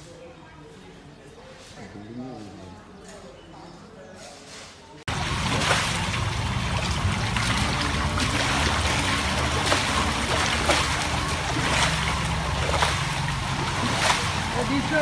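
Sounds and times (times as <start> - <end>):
engine running low: 5.1 - 15.0
rainwater flowing and splashing: 5.1 - 15.0.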